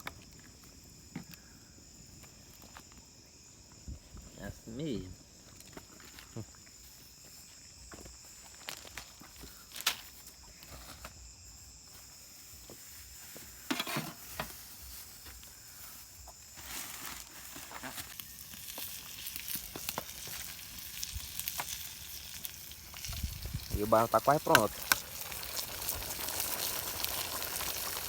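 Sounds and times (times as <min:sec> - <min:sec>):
food sizzling in a pan: 0:16.6 - 0:28.0.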